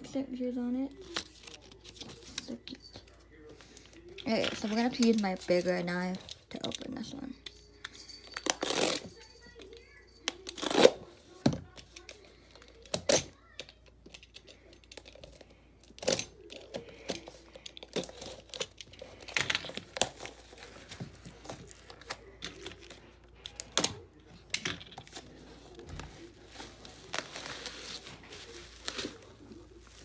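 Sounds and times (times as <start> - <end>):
packaging tearing and crinkling: 26.1 - 30.0.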